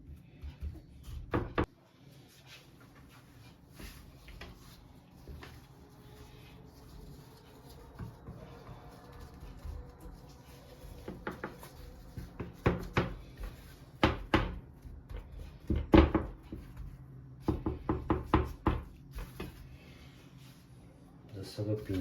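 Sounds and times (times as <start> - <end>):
kitchen knocks and clatter: 12.3 - 16.9.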